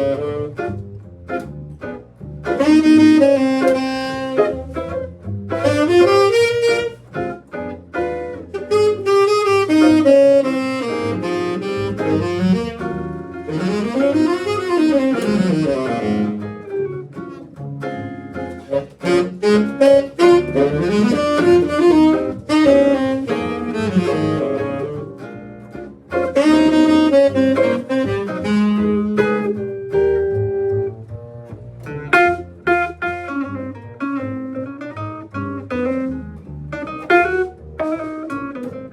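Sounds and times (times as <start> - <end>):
saxophone solo: 0.0 - 1.4, 2.4 - 17.2, 17.9 - 30.8, 32.1 - 36.2, 36.9 - 38.9
jazz band playing: 0.0 - 38.9.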